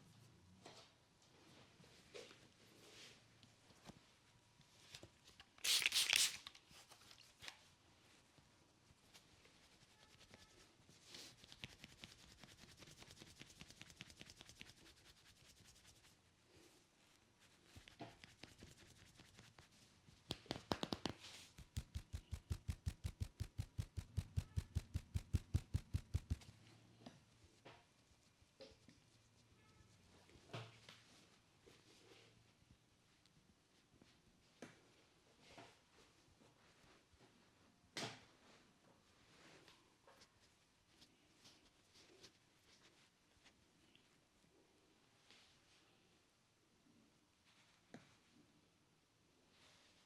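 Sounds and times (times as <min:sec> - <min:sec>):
fingers rubbing through hair: 0:09.4 - 0:16.2, 0:17.4 - 0:26.6.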